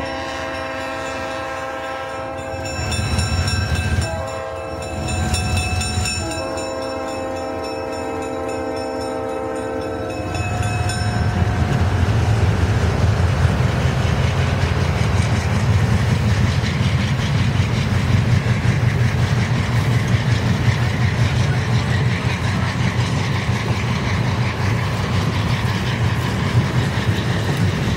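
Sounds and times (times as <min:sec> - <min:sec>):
locomotive air horn blast: 0:00.0 - 0:03.0, 0:03.8 - 0:05.3, 0:06.0 - 0:12.3
train rumbling past: 0:00.0 - 0:27.9
wheels clattering on rails: 0:00.0 - 0:27.9.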